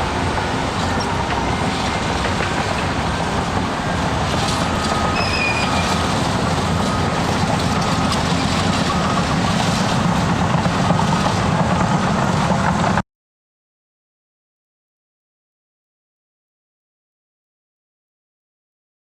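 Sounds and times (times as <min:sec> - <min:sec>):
bulldozer diesel engine under load: 0:00.0 - 0:13.0
steel tracks clattering: 0:00.0 - 0:13.0.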